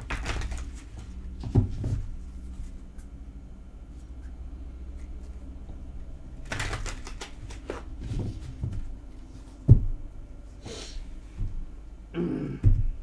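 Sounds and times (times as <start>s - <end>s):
cards clicking and rustling: 0.0s - 1.0s, 6.4s - 8.4s.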